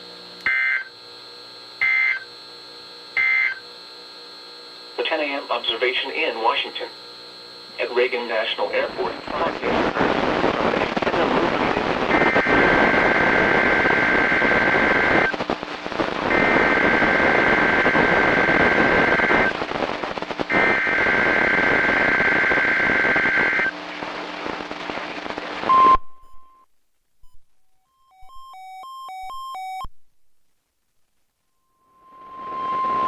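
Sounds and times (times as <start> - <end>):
steady warning alarm tone: 0.4 - 0.9, 1.8 - 2.3, 3.2 - 3.6
radio static hiss: 3.2 - 26.0, 31.0 - 33.0.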